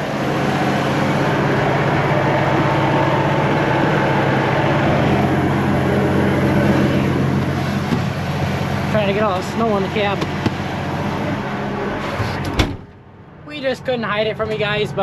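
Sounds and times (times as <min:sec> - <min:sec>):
tractor diesel engine humming: 0:00.0 - 0:12.6
constant rushing noise: 0:00.0 - 0:12.9.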